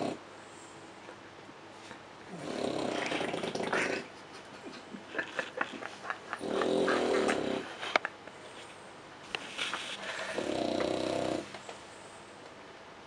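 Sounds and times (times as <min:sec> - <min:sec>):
man snoring: 0:02.3 - 0:03.0, 0:10.4 - 0:11.5.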